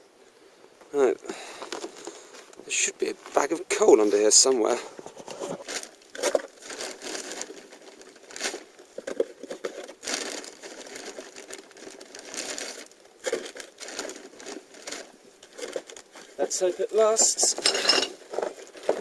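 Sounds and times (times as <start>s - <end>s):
plastic sack rustling and crinkling: 1.3s - 19.0s
scraping: 17.2s - 19.0s.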